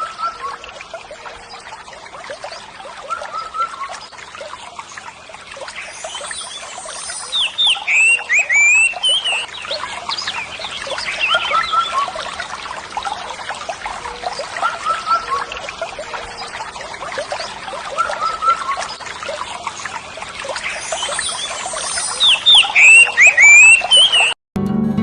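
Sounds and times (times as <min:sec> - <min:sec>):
water trickling and pouring: 0:00.0 - 0:24.4.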